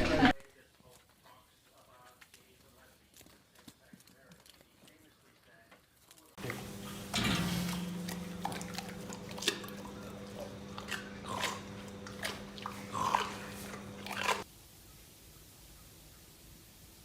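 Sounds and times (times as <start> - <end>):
crunching and clicking: 0.4 - 14.4
low hum: 6.4 - 14.4.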